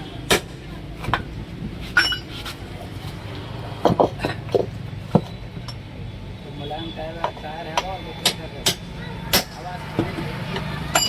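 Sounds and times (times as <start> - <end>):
metal tools clinking: 1.9 - 5.8, 10.6 - 11.0.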